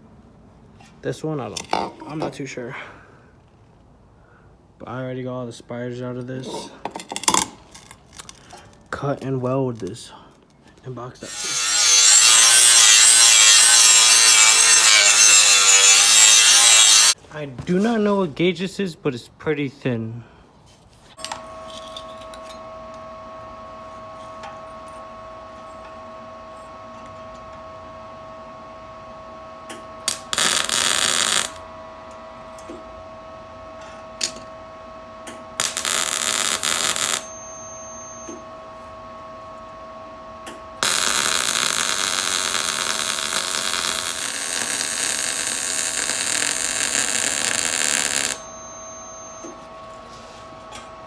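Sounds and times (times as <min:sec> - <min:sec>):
welding crackle: 0:11.3 - 0:17.2, 0:30.1 - 0:31.6, 0:35.6 - 0:37.9, 0:40.8 - 0:48.7
steady hum: 0:22.2 - 0:51.0.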